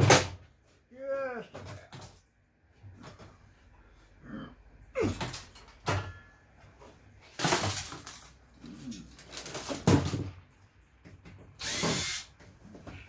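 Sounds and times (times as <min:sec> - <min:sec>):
metal parts clattering and scraping: 0:07.2 - 0:10.3.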